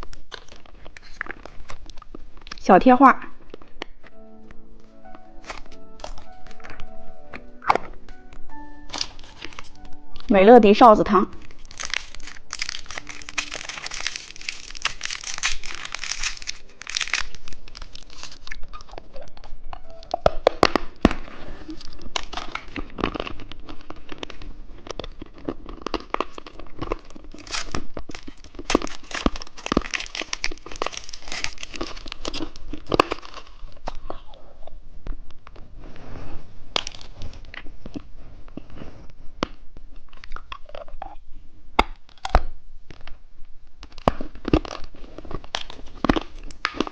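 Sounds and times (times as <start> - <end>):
plastic packaging crinkling: 0.0 - 34.4, 36.7 - 38.1, 43.8 - 46.9.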